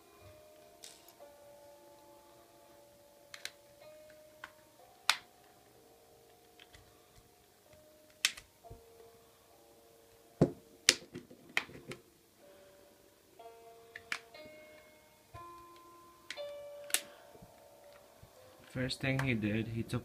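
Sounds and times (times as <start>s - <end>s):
soft background music: 0.0s - 20.0s
plastic phone parts clicking: 3.3s - 5.3s, 8.1s - 8.5s.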